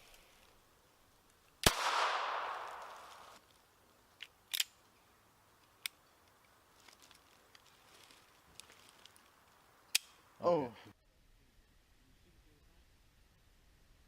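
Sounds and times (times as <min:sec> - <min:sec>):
revolver gunshot: 0:01.6 - 0:03.4.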